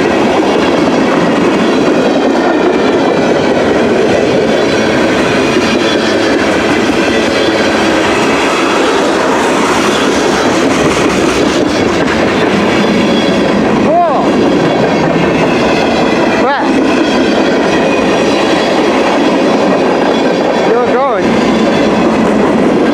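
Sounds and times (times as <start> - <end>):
train wheels rolling on rail: 0.0 - 22.9.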